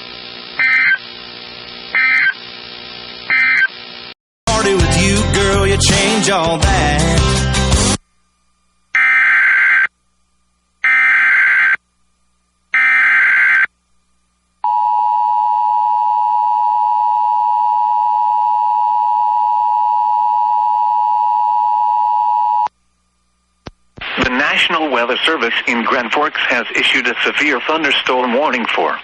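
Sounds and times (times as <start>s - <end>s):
screeching digital data bleats: 0.6s - 1.0s, 2.0s - 2.4s, 3.3s - 3.7s, 9.0s - 9.9s, 10.8s - 11.8s, 12.8s - 13.7s.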